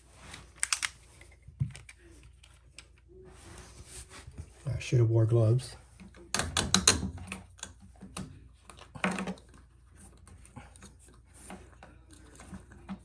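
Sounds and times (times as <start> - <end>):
plastic clicks and knocks: 6.3 - 8.3.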